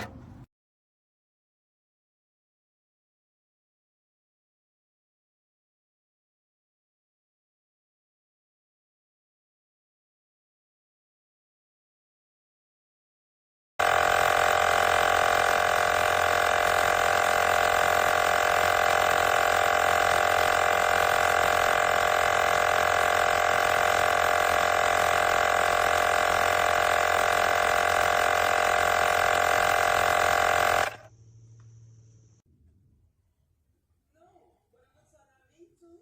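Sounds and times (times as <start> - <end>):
electric air compressor running: 0.0 - 0.4, 13.8 - 32.4.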